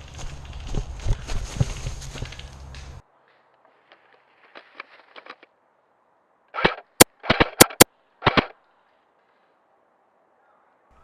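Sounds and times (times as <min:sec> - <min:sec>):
airsoft rifle fire: 0:06.6 - 0:08.5.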